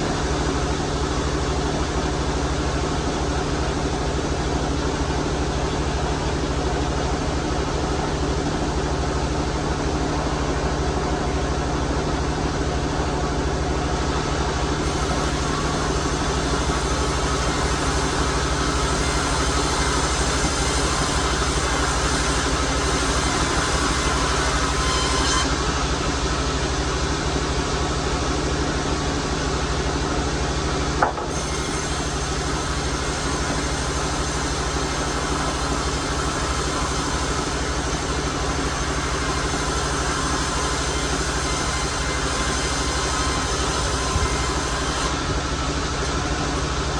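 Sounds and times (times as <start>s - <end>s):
motor hum: 0.0s - 46.9s
sawing hiss: 14.8s - 25.5s, 31.3s - 45.2s.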